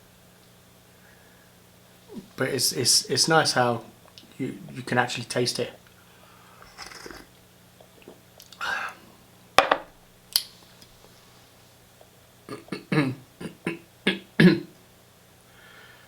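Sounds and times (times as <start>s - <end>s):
person sipping tea: 6.5s - 9.0s
mouth sounds: 12.5s - 14.7s.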